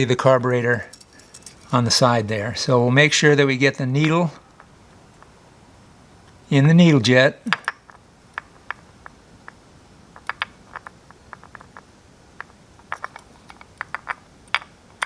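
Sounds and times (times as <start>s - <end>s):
small metal parts clicking: 0.7s - 1.8s, 10.2s - 14.8s.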